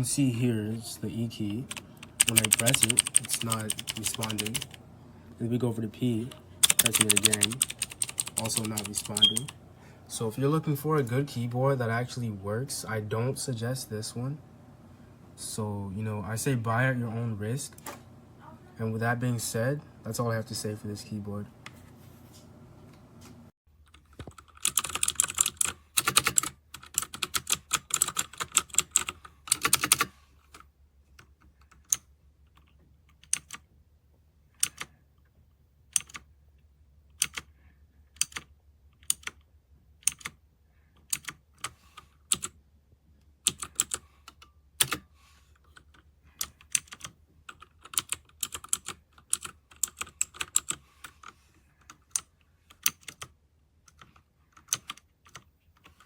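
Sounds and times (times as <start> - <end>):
mechanical keyboard typing: 1.6 - 4.8, 6.6 - 9.6, 23.9 - 30.1, 33.1 - 33.6, 34.6 - 34.9, 36.0 - 36.2, 37.2 - 37.5, 38.2 - 39.4, 40.0 - 40.4, 41.0 - 42.6, 43.5 - 44.0, 44.8 - 45.0, 45.7 - 51.3, 51.9 - 53.3, 53.9 - 56.0.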